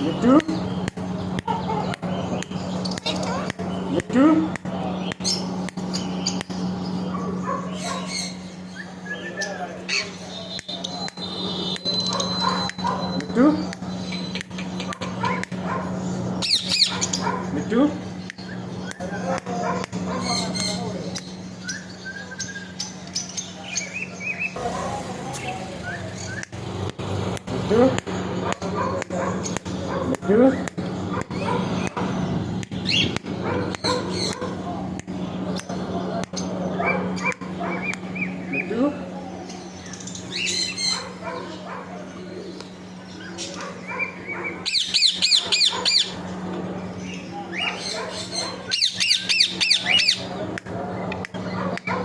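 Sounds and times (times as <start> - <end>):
parrot chirping and chattering: 0.0 - 52.0
steady low hum: 0.0 - 52.0
sharp clicks: 0.3 - 6.8, 10.5 - 15.7, 18.2 - 21.8, 26.2 - 36.5
parrot whistling and chirping: 7.4 - 15.5, 16.4 - 17.4, 20.1 - 24.6, 43.9 - 46.2, 47.5 - 50.2.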